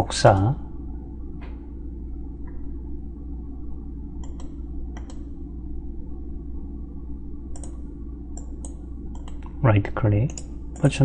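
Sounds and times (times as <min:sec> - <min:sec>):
low electrical hum: 0:00.0 - 0:11.0
computer mouse clicks: 0:04.2 - 0:05.3, 0:07.5 - 0:07.8, 0:08.4 - 0:09.6.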